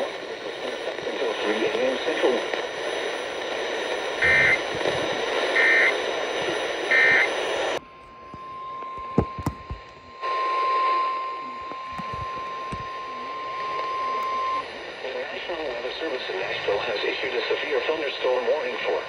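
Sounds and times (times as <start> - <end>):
radio static: 0.0 - 19.0
steady warning alarm tone: 3.8 - 16.7
digital squawks: 4.2 - 4.6.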